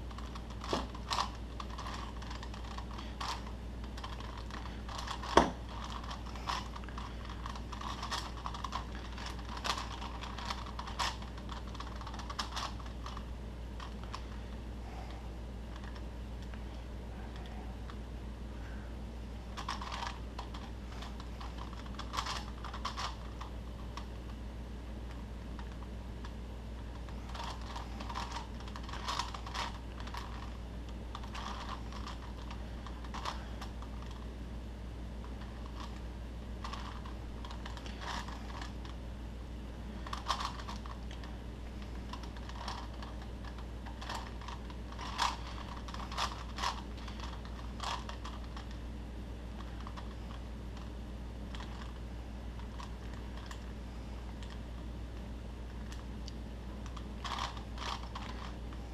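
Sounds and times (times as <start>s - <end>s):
puzzle cube clacking: 0.1s - 13.2s, 19.5s - 24.3s, 25.1s - 34.3s, 35.2s - 39.0s, 40.0s - 48.8s, 49.5s - 50.9s, 51.5s - 52.0s, 52.6s - 53.7s, 56.8s - 58.9s.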